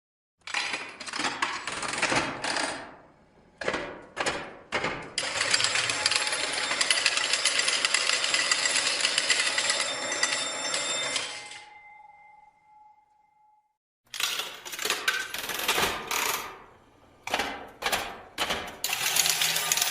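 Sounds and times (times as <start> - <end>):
bell ringing with metallic clatter: 6.0 - 13.2.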